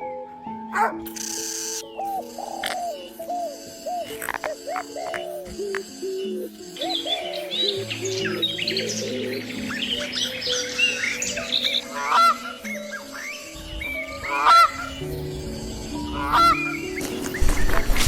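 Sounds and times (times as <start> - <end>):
high waterfowl chirps: 11.8 - 12.8, 14.2 - 15.1, 16.1 - 16.9
loud honking calls: 14.2 - 15.1.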